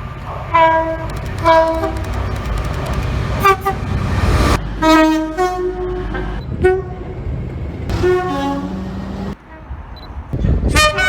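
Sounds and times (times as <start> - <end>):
low train rumble: 0.0 - 11.0
train two-tone horn blasts: 3.4 - 7.1, 7.9 - 9.8, 10.7 - 11.0.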